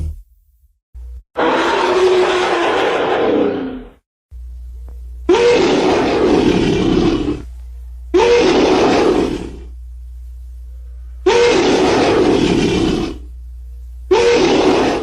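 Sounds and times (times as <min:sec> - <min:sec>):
low steady hum: 0:00.0 - 0:01.3, 0:04.3 - 0:05.4, 0:06.0 - 0:11.3, 0:12.0 - 0:14.2
elephant calls: 0:14.1 - 0:15.0.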